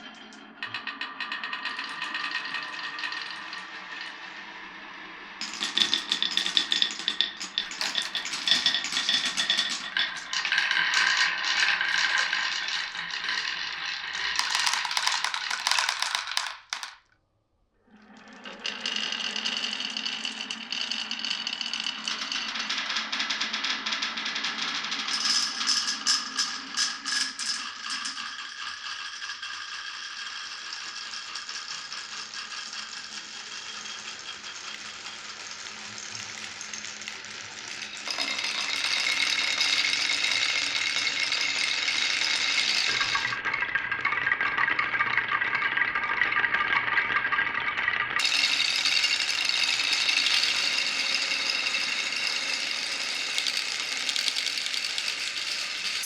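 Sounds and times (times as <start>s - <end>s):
marbles rolling and clattering: 0.0s - 17.1s, 17.9s - 56.0s
marbles clicking together: 5.4s - 17.0s, 33.1s - 43.4s, 48.2s - 56.0s.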